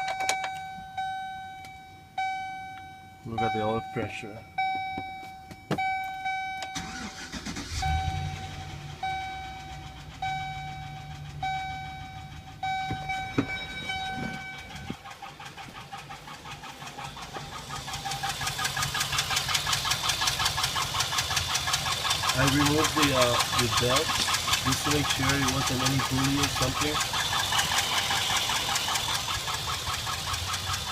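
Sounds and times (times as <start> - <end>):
dashboard warning chime: 0.0 - 15.1
engine starting and running: 5.8 - 30.9
rapid rhythmic engine knocking: 6.8 - 30.9.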